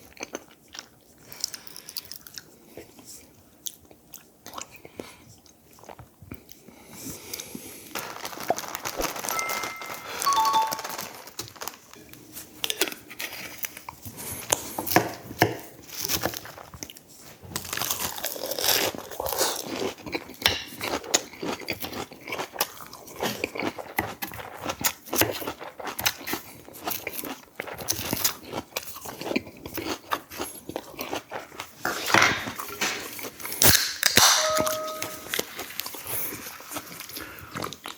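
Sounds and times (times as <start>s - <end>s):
person chewing crunchy food: 0.0s - 9.3s, 17.6s - 32.7s.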